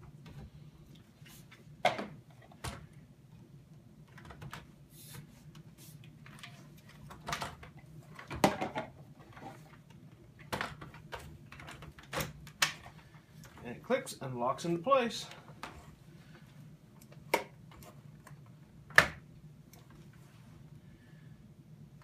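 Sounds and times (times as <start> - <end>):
plastic parts clicking and knocking: 4.0 - 4.7, 6.2 - 13.6.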